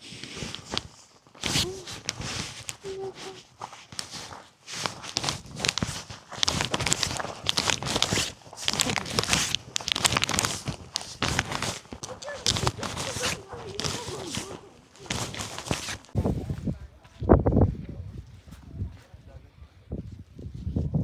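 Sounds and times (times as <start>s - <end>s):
footsteps scuffing on trail: 0.6s - 16.4s.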